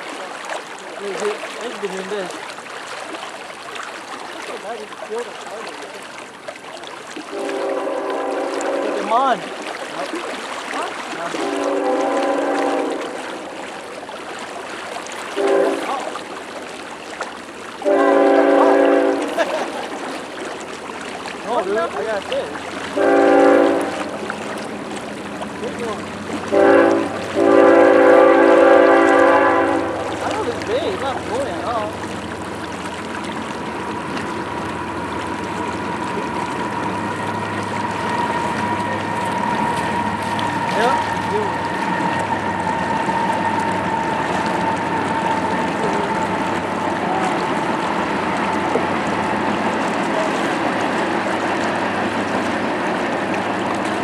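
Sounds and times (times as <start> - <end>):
floodwater rushing: 0.0 - 54.0
train horn chord: 7.3 - 9.2, 11.3 - 13.6, 15.4 - 16.1, 17.8 - 19.3, 23.0 - 24.2, 26.4 - 30.2, 35.8 - 47.7.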